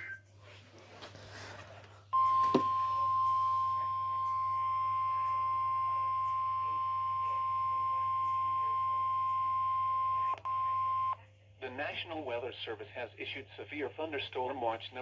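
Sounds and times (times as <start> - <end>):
steady warning beep: 2.2 - 11.2.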